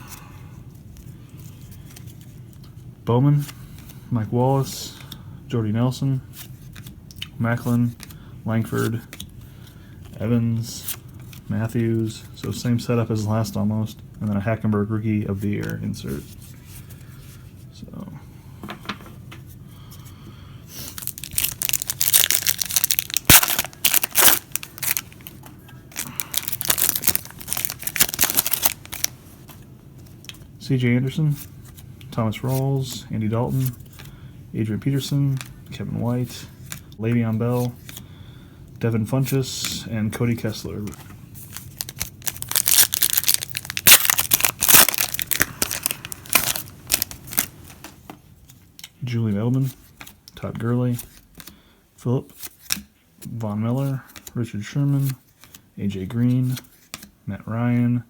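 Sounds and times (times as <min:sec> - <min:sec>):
plastic wrapper tearing and crinkling: 0:20.9 - 0:29.1, 0:41.5 - 0:47.7.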